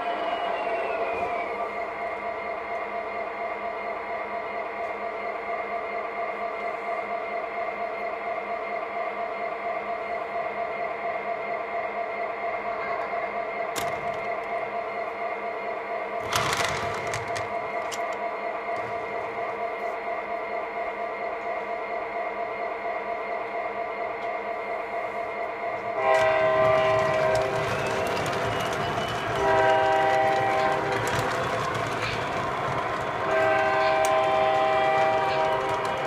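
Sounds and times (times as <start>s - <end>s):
model locomotive engine drone: 0.0s - 36.0s
locomotive horn blasts: 26.0s - 27.6s, 29.4s - 31.0s, 33.2s - 36.0s.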